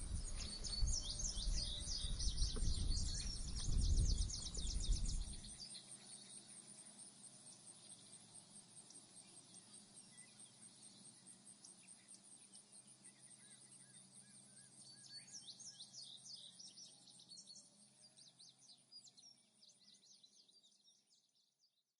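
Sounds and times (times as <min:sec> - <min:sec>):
birds chirping: 0:00.0 - 0:07.0.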